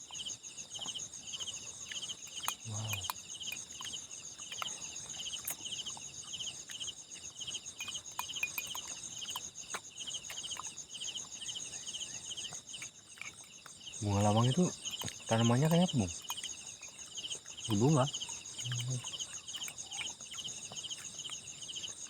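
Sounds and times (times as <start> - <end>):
continuous high insect trill: 0.0 - 22.0
insect pulsed chirp: 0.0 - 22.0.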